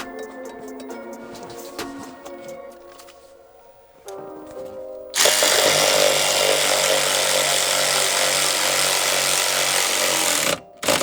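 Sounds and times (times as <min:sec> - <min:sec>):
handheld power tool running: 0:05.2 - 0:11.0.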